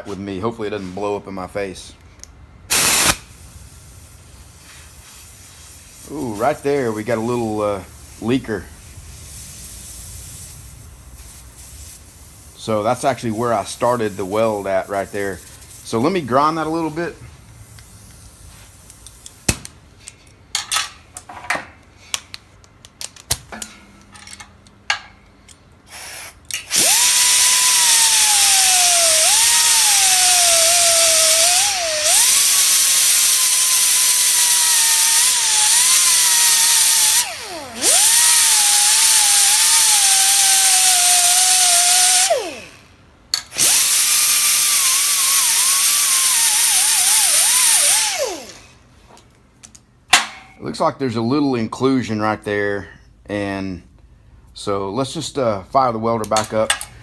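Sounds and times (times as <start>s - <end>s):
high-speed grinder grinding metal: 2.7s - 3.2s, 26.7s - 42.8s, 43.6s - 48.6s.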